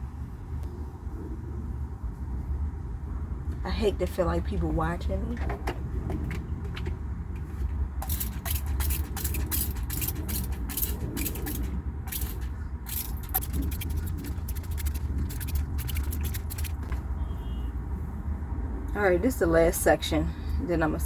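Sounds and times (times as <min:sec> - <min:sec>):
scratchy hair brushing strokes: 0:08.0 - 0:16.9
steady low hum: 0:08.0 - 0:16.9.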